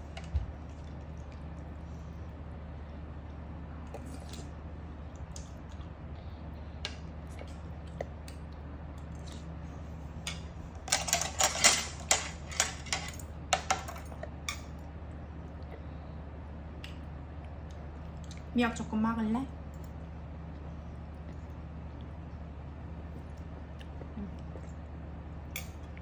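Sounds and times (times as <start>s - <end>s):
steady low hum: 0.0s - 26.0s
tableware clattering: 10.9s - 14.0s.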